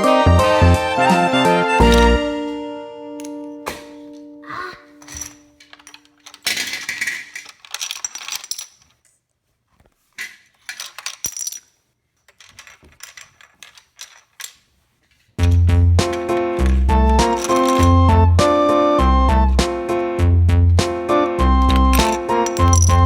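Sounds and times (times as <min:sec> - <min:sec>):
plastic toy parts clattering: 0:04.9 - 0:18.2, 0:21.6 - 0:23.0.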